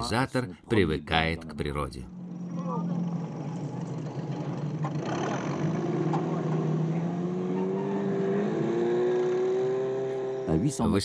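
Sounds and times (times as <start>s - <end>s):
engine running: 2.1s - 10.6s.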